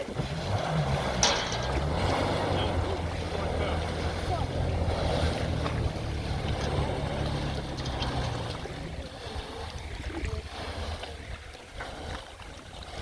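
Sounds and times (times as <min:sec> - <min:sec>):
jet ski engine hum: 0:00.0 - 0:13.0
water splashing: 0:00.0 - 0:13.0
wind: 0:00.0 - 0:13.0.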